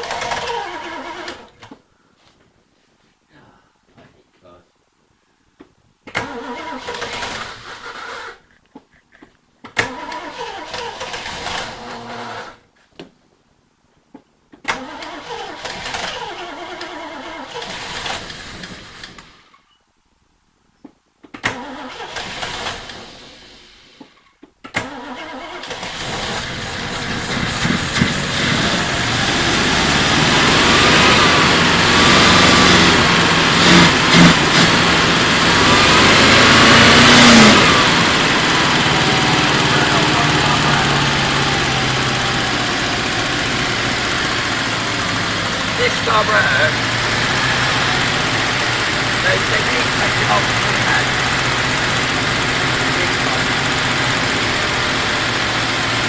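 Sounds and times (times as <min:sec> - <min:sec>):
car engine cranking on starter: 0:00.0 - 0:01.6, 0:06.1 - 0:08.4, 0:09.8 - 0:12.6, 0:14.6 - 0:19.4, 0:21.4 - 0:23.8, 0:24.7 - 0:56.0
car engine revving: 0:25.4 - 0:56.0.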